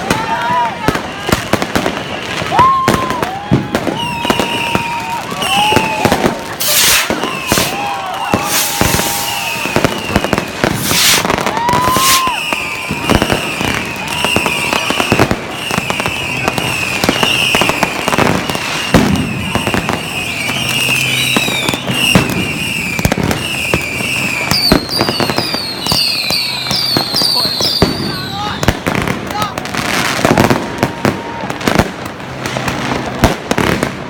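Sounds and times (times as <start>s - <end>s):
fireworks bangs and crackles: 0.0s - 34.0s
rocket whistle: 3.9s - 28.7s.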